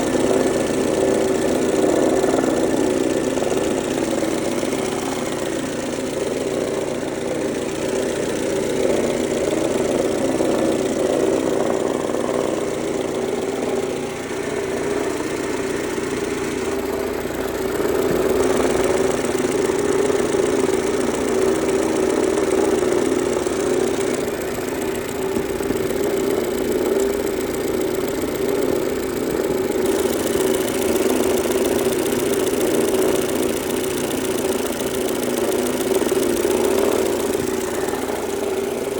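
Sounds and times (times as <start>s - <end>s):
car engine idling: 0.0s - 38.9s
mechanical knocking and rattling: 23.6s - 38.9s.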